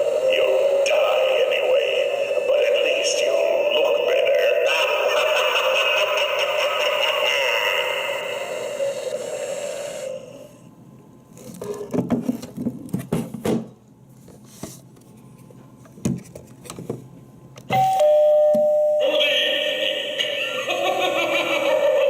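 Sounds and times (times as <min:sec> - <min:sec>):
electronic sung tune: 0:00.0 - 0:03.6
ding-dong doorbell chime: 0:17.7 - 0:19.0.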